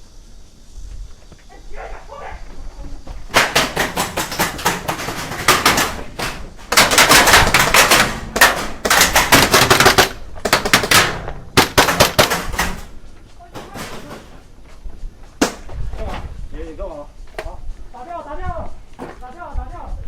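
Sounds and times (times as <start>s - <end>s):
airsoft guns firing bursts: 3.3s - 13.0s.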